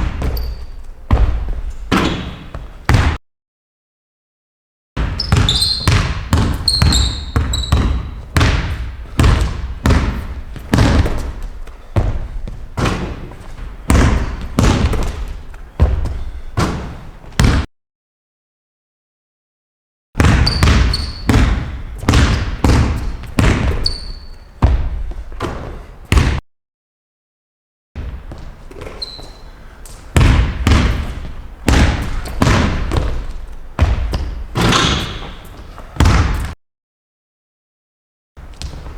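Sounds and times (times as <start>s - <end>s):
sneaker squeaks: 0.0s - 2.9s, 5.0s - 17.5s, 20.2s - 26.2s, 28.0s - 36.6s, 38.4s - 38.9s
basketball dribbling on hard court: 0.0s - 3.2s, 5.0s - 17.7s, 20.2s - 26.4s, 30.2s - 36.6s.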